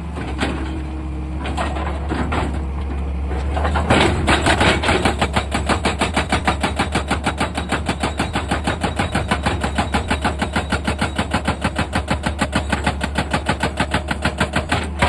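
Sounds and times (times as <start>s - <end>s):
excavator engine drone: 0.0s - 15.0s
hydraulic rock breaker hammering: 3.6s - 15.0s.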